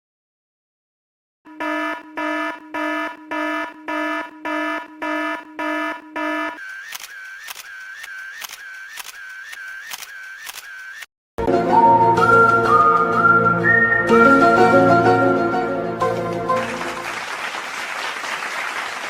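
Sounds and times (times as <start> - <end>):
electronic alarm buzzer beeps: 1.5 - 11.1.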